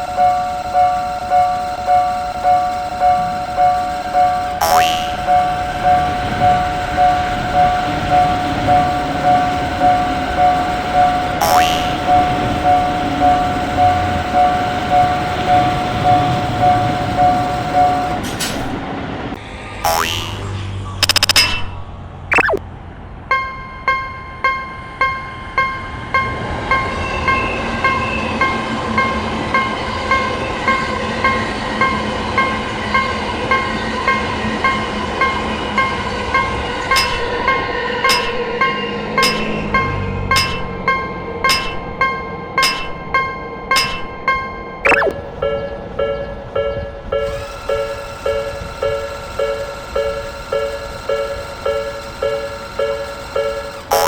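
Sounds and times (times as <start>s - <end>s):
level crossing alarm clanging: 0.0s - 18.8s, 36.4s - 54.0s
passing train rumble: 5.2s - 11.4s, 12.0s - 19.8s, 24.6s - 51.0s
sharp click: 21.0s - 22.6s, 39.2s - 39.7s, 40.3s - 40.8s, 43.8s - 44.2s, 44.9s - 45.2s.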